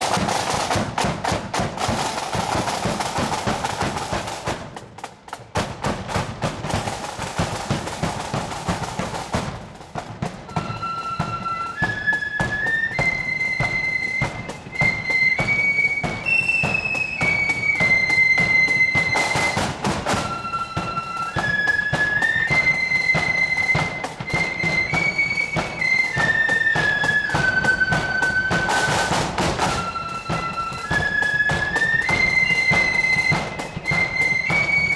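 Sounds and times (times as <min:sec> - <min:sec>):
snare and bass drums: 0:00.0 - 0:34.9
snare drum rolls: 0:00.0 - 0:34.9
flutes playing a tune: 0:10.5 - 0:34.9.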